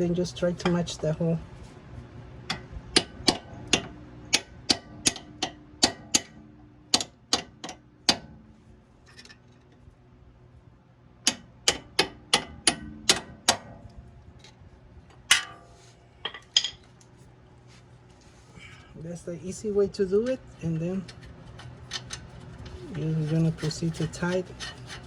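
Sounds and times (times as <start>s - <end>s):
metal-on-metal taps and knocks: 2.5s - 8.4s.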